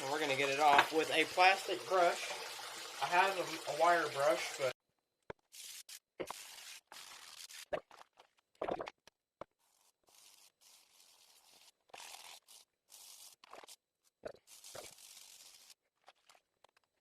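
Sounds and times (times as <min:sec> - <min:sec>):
brush scrubbing metal: 0:09.6 - 0:13.8, 0:14.5 - 0:15.8.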